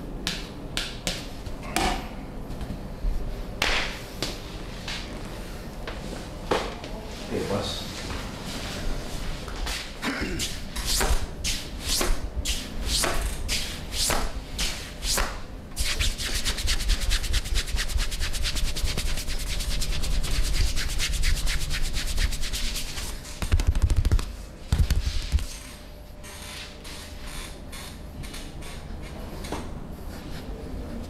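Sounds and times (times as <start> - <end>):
hands rubbing skin: 13.5 - 24.2.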